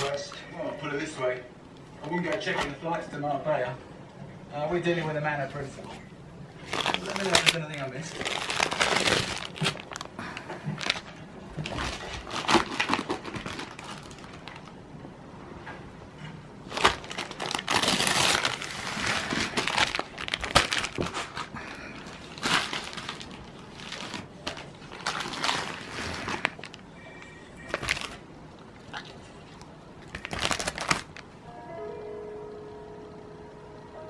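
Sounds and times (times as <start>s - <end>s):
paper crumpling and tearing: 6.6s - 14.7s, 16.6s - 26.8s, 27.6s - 28.2s, 30.0s - 31.2s.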